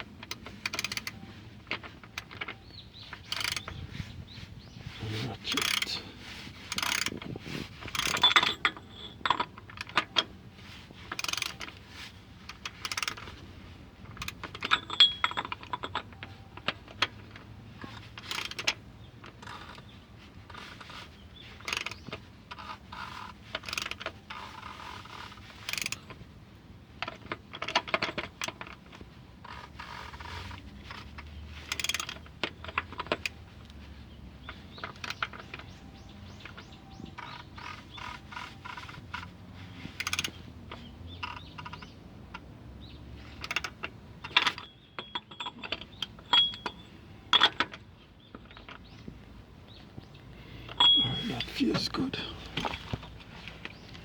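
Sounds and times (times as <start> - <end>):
hand ratchet clicking: 0.2 - 3.8, 5.6 - 5.9, 6.6 - 8.6, 11.1 - 11.7, 12.5 - 13.4, 17.9 - 18.8, 21.6 - 26.0, 31.6 - 33.4, 37.2 - 40.4
light metallic clinks: 8.0 - 10.0, 14.4 - 16.3, 44.3 - 47.8, 50.6 - 52.9.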